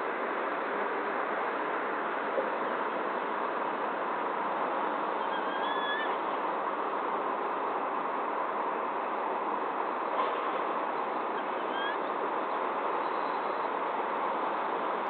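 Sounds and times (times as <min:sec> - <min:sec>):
rushing outdoor background noise: 0:00.0 - 0:15.0
whistled bird call: 0:05.2 - 0:06.2, 0:11.4 - 0:12.1.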